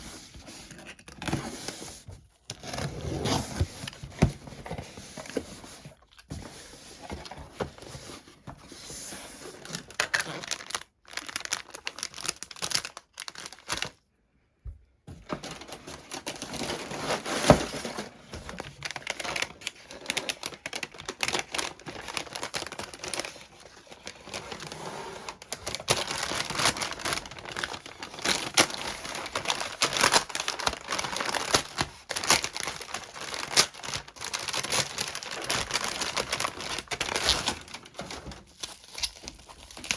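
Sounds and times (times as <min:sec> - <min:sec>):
packaging crinkling and tearing: 0:09.4 - 0:14.0, 0:15.2 - 0:39.9.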